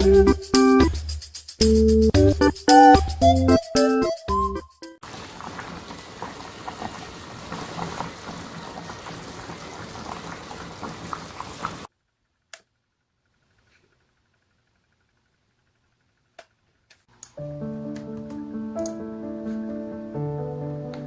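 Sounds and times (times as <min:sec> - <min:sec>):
food sizzling and popping: 0:05.0 - 0:11.9.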